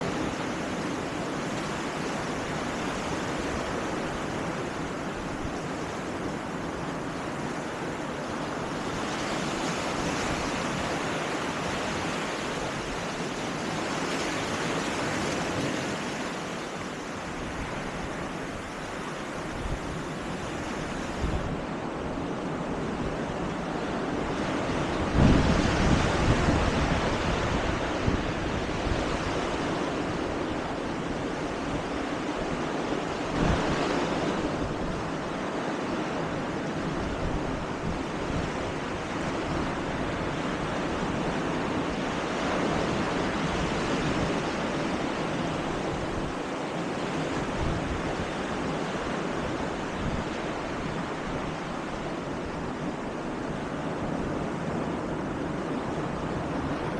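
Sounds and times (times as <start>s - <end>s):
surf washing onto beach: 0.0s - 56.9s
wind rumble on microphone: 0.0s - 56.9s.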